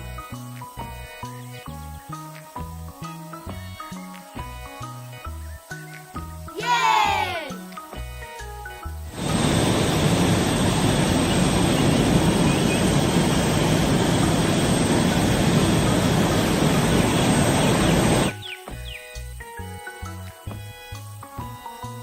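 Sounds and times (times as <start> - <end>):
loud machinery engine noise: 9.1 - 18.3.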